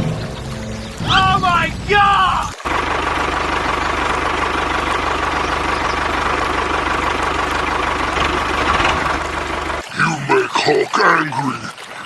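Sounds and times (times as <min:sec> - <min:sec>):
engine idling: 0:02.0 - 0:09.8
constant hum: 0:02.5 - 0:09.9.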